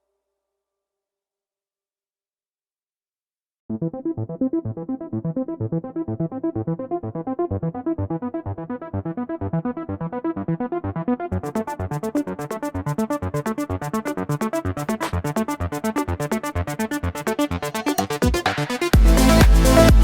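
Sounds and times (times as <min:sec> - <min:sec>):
pulsing synthesizer notes: 0:03.7 - 0:20.0.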